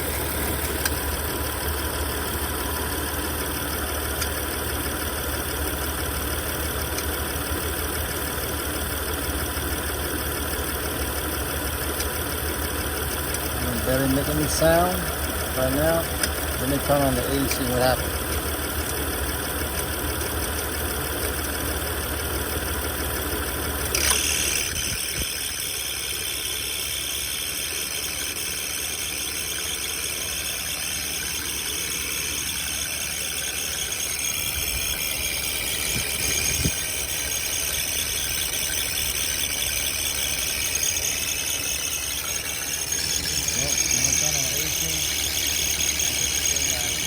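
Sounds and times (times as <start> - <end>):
car engine idling: 0.0 - 47.0
click: 23.9 - 25.3
belt squealing and chirping: 29.4 - 47.0.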